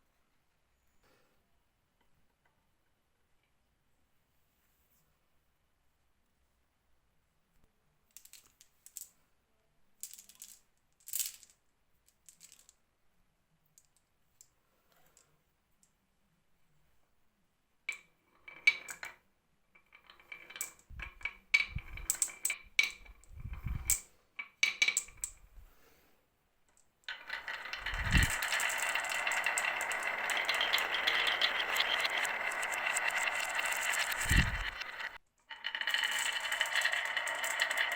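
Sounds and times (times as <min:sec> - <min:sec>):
marbles rolling rattle: 0:20.0 - 0:22.6, 0:23.3 - 0:24.0, 0:27.1 - 0:37.9
marbles clicking down track: 0:27.1 - 0:37.9.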